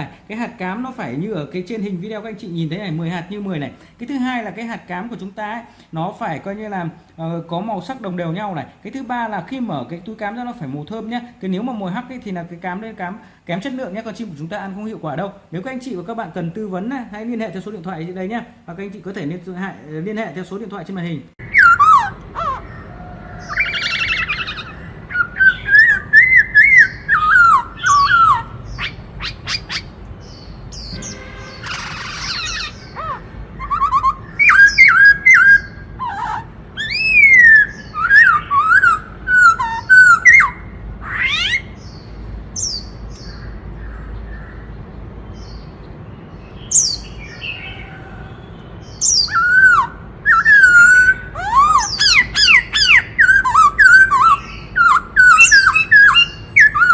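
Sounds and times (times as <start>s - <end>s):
bird singing whistled phrases: 21.4s - 29.9s, 30.8s - 41.7s, 49.0s - 56.9s.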